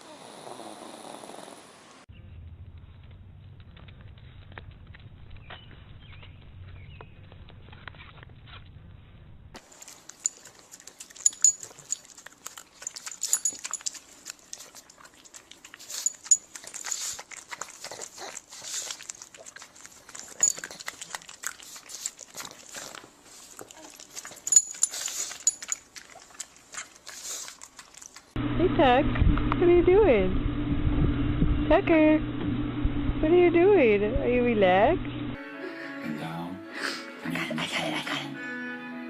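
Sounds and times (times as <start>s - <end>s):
puppy sounds: 9.6s - 28.4s.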